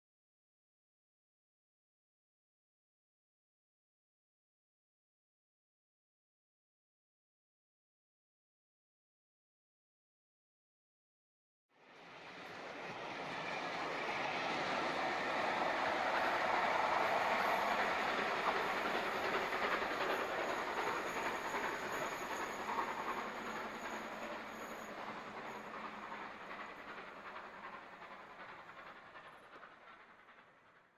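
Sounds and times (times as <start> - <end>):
rack train running past: 12.0 - 30.9.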